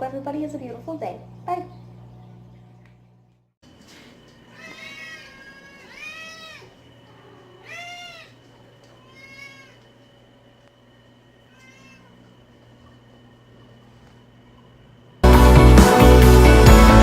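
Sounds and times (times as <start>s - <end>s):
cat meowing: 4.5s - 8.4s, 9.0s - 9.8s, 11.4s - 12.2s.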